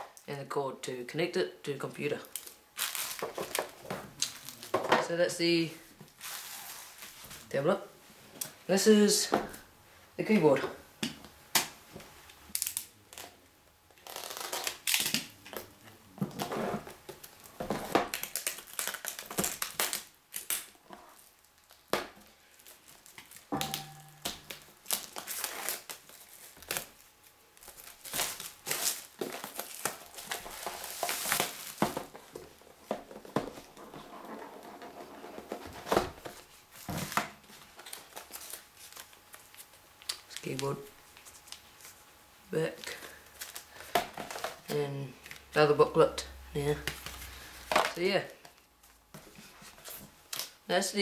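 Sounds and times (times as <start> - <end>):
packaging crinkling and tearing: 2.2 - 4.7, 12.5 - 15.5, 16.3 - 23.5, 24.2 - 32.6, 36.7 - 42.0, 42.8 - 45.5.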